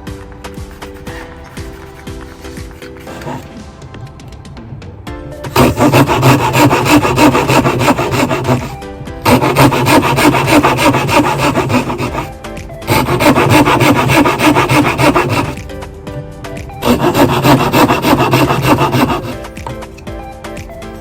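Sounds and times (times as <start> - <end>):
background music: 0.0 - 21.0
hand tool rasping wood: 0.8 - 3.5, 5.5 - 15.7, 16.7 - 19.9.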